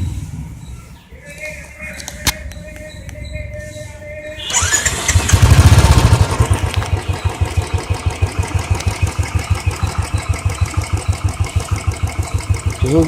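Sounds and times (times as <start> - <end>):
motorcycle engine starting and idling: 4.4 - 13.0.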